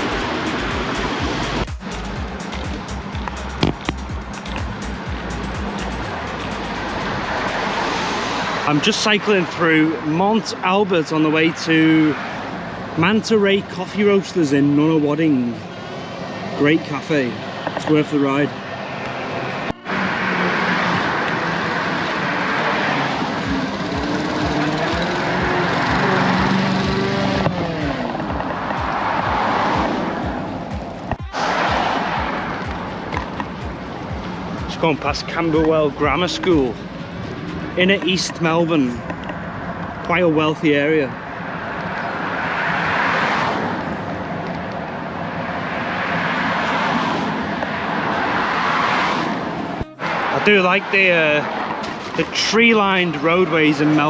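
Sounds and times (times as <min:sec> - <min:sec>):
motor traffic passing: 0:00.0 - 0:09.3, 0:18.8 - 0:40.0, 0:41.1 - 0:54.0
bicycle road noise: 0:00.0 - 0:10.6, 0:17.2 - 0:54.0.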